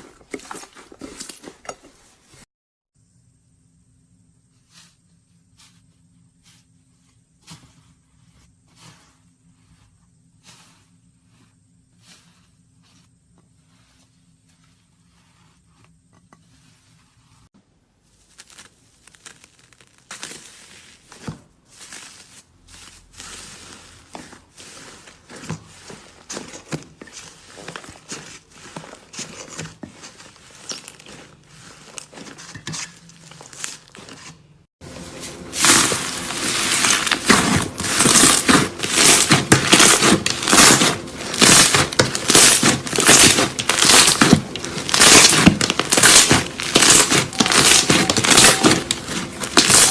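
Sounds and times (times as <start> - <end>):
slime squeezed crackling: 18.1 - 21.0, 35.6 - 49.9.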